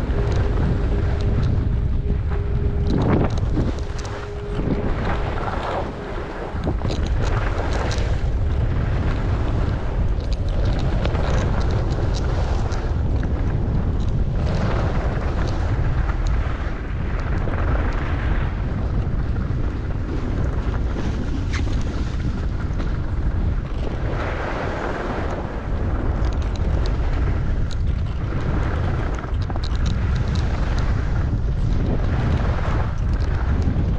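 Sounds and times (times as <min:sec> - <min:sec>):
skis scraping over snow: 0:00.0 - 0:33.9
wind buffeting microphone: 0:00.0 - 0:33.9.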